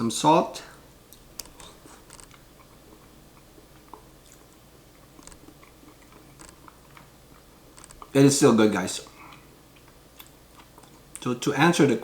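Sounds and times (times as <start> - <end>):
person chewing wet mouth sounds: 1.1 - 8.2, 9.2 - 11.2.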